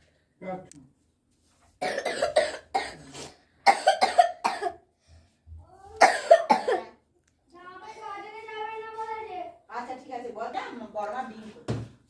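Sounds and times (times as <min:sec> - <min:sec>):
child coughing: 0:01.8 - 0:04.9, 0:05.9 - 0:07.0.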